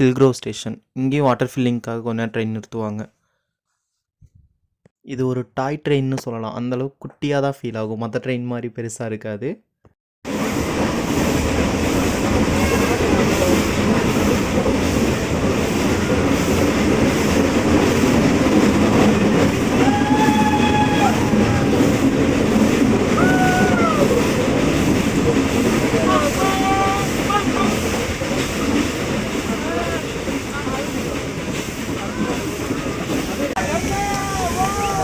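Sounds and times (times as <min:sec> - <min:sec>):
train wheels and engine rumbling: 0:10.3 - 0:35.0
train whistle toots: 0:12.5 - 0:13.4, 0:19.7 - 0:21.9, 0:23.2 - 0:24.3.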